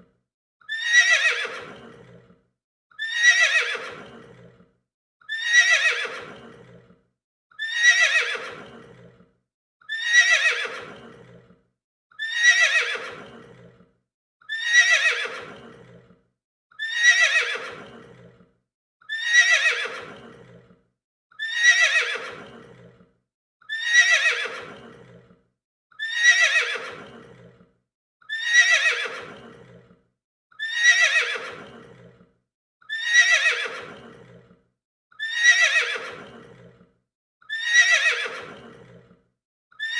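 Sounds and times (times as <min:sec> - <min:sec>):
horse neighing: 0:00.8 - 0:02.2, 0:03.0 - 0:04.5, 0:05.4 - 0:06.8, 0:07.6 - 0:09.1, 0:10.0 - 0:11.4, 0:12.2 - 0:13.7, 0:14.6 - 0:16.0, 0:16.8 - 0:18.3, 0:19.2 - 0:20.6, 0:21.5 - 0:22.9, 0:23.8 - 0:25.2, 0:26.0 - 0:27.5, 0:28.4 - 0:29.8, 0:30.6 - 0:32.0, 0:33.0 - 0:34.3, 0:35.2 - 0:36.6, 0:37.6 - 0:39.0.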